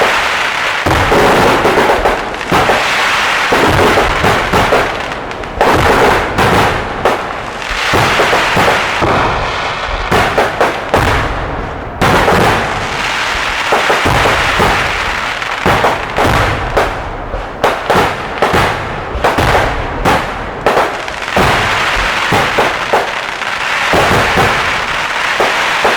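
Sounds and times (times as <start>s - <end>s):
fireworks bangs and crackling: 0.0s - 25.9s.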